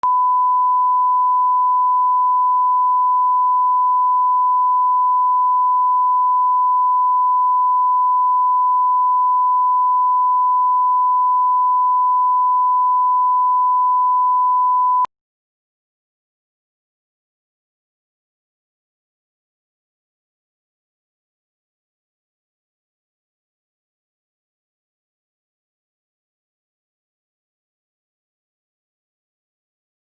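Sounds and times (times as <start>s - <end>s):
sine-wave test tone: 0.0s - 15.1s.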